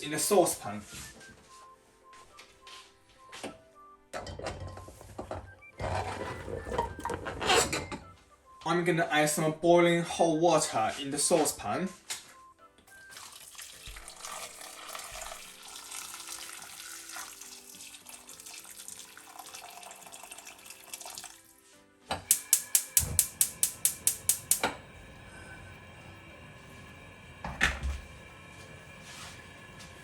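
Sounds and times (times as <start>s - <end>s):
boiling water pouring: 13.1s - 21.6s, 22.3s - 25.4s
gas hob igniter clicking: 22.2s - 24.9s.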